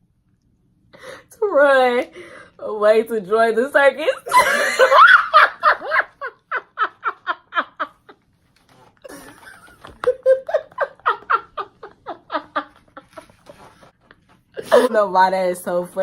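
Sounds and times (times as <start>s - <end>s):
woman laughing hard: 4.3s - 8.2s, 9.0s - 13.9s, 14.6s - 14.9s.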